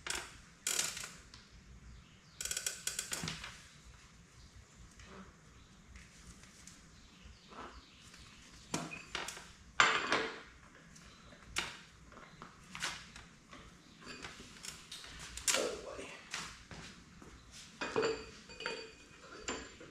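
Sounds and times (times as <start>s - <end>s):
metallic clinks and clanks: 17.8s - 19.9s.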